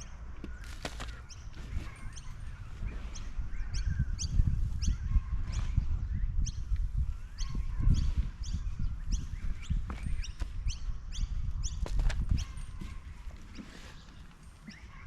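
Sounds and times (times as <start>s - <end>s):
birds chirping: 0.0s - 15.0s
hands digging through soil: 0.6s - 3.2s.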